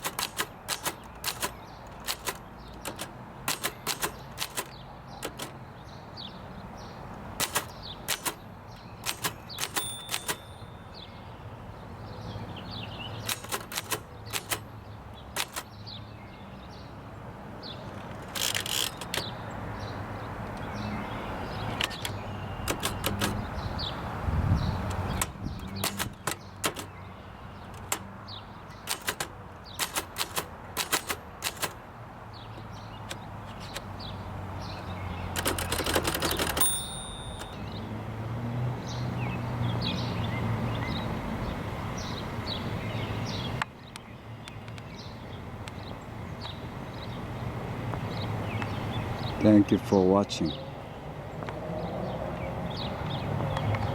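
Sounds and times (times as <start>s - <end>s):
typewriter key strikes: 0.0s - 5.6s, 7.4s - 10.8s, 13.2s - 14.7s, 15.3s - 15.8s, 18.0s - 19.4s, 21.8s - 23.4s, 24.8s - 27.0s, 27.6s - 28.1s, 28.7s - 31.8s, 33.1s - 33.9s, 35.3s - 37.6s
typewriter rasping: 0.0s - 5.6s, 7.3s - 10.7s, 13.2s - 14.7s, 15.3s - 15.7s, 17.8s - 19.4s, 21.8s - 23.5s, 24.9s - 27.0s, 27.6s - 31.9s, 32.6s - 34.0s, 35.3s - 37.6s.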